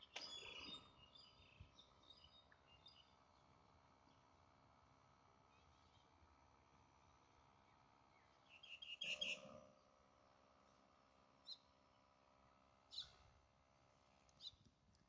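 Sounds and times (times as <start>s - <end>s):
birds chirping: 0.0s - 4.3s, 7.6s - 9.6s
faint steady hum: 0.0s - 15.0s.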